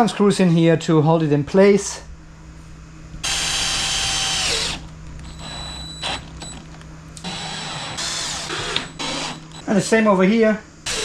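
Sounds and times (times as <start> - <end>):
drill driving screw into plasterboard: 3.2 - 6.3, 7.2 - 9.5.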